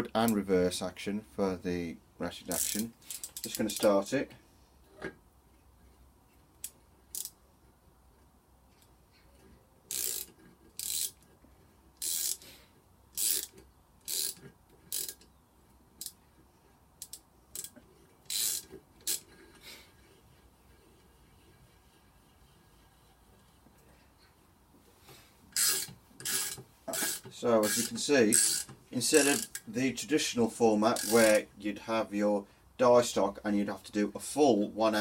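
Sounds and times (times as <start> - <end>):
ratchet clicking: 2.5 - 3.9, 6.6 - 7.4, 9.9 - 11.2, 12.0 - 12.4, 13.2 - 15.3, 17.0 - 19.3, 25.6 - 29.7, 30.9 - 31.4.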